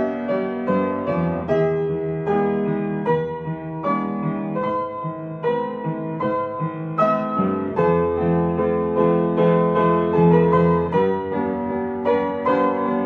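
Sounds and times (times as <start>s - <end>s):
gentle instrumental music: 0.0s - 13.0s.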